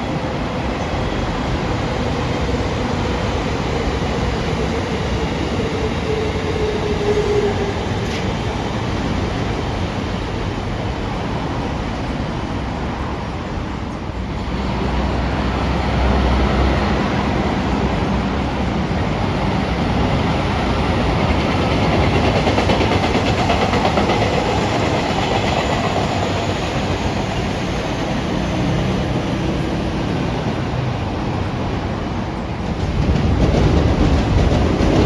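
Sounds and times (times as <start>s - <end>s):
train wheels clattering on rails: 0.0s - 35.0s.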